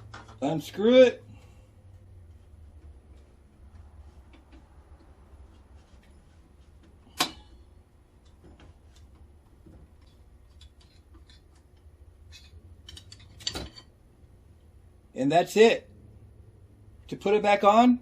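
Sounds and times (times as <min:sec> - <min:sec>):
steady low hum: 0:00.0 - 0:18.0
metal clicks and ticks: 0:10.0 - 0:13.9.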